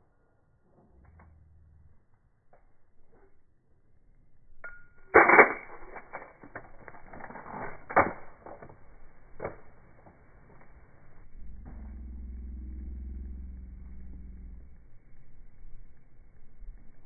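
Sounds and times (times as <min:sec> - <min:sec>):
gunshots: 0:05.1 - 0:06.3.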